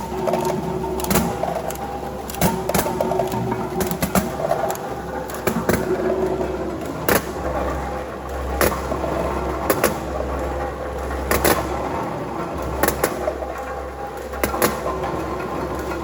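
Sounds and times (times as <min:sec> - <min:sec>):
treats clicking into container: 0:00.0 - 0:05.8
sorting machine humming: 0:00.0 - 0:16.0.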